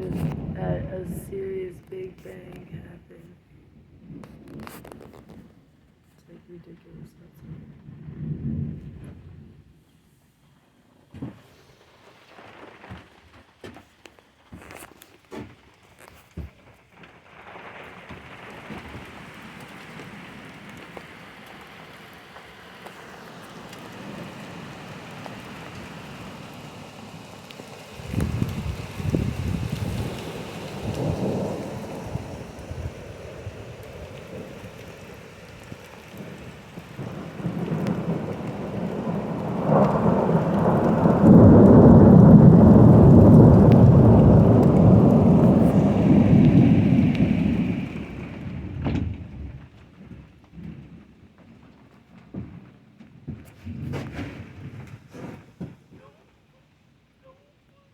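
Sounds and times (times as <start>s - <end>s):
loud low thunder rumble: 0.0s - 4.7s, 7.0s - 9.7s, 28.0s - 49.8s
steady rain falling: 0.0s - 57.9s
raindrops ticking: 11.9s - 53.0s.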